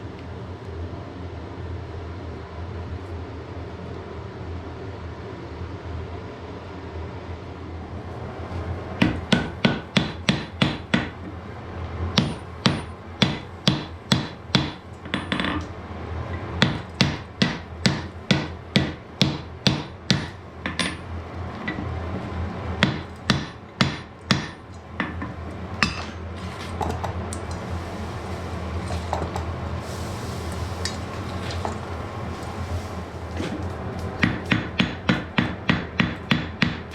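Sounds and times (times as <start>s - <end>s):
hammer striking iron on anvil: 9.0s - 11.2s, 12.2s - 15.7s, 16.6s - 21.0s, 22.8s - 26.2s, 34.2s - 36.9s
low hum: 11.1s - 36.4s.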